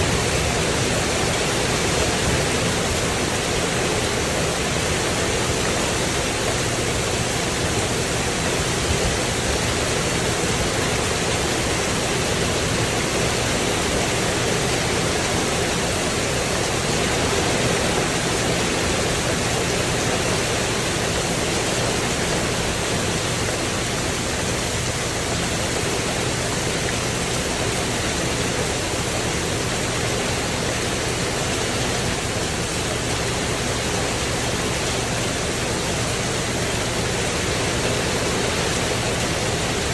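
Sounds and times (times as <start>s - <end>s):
heavy rain on a tin roof: 0.0s - 39.9s.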